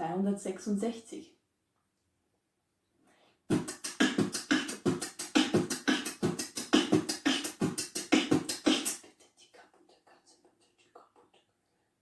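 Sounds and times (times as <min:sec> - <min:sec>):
vocal beatbox: 0:03.5 - 0:11.6.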